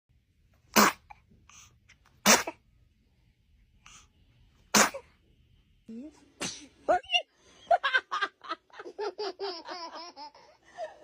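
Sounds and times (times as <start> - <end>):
baby sneezing: 0.7 - 1.2, 2.2 - 2.6, 4.7 - 5.1, 6.4 - 6.8.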